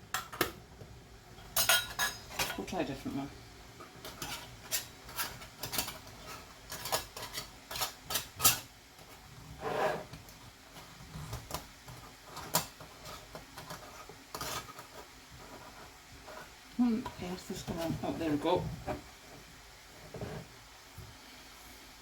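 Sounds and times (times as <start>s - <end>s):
lid scraping on glass: 4.0s - 8.6s, 9.6s - 10.2s.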